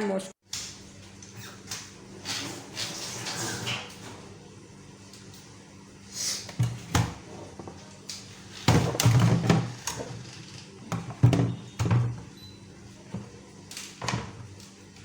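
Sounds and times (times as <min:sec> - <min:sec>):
kitchen items knocking and banging: 0:08.6 - 0:10.3, 0:10.9 - 0:12.3.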